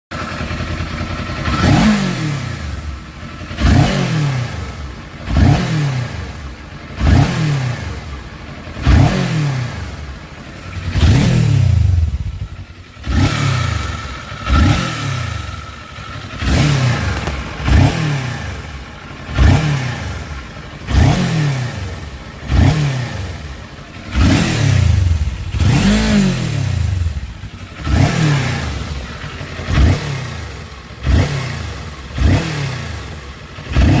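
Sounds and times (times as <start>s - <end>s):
engine revving in short blips: 13.0s - 23.4s
rattling noise: 15.4s - 20.9s.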